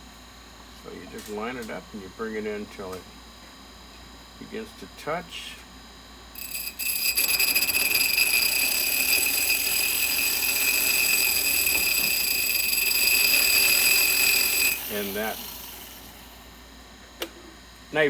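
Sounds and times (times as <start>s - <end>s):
grinding wheel whine: 6.3s - 17.2s.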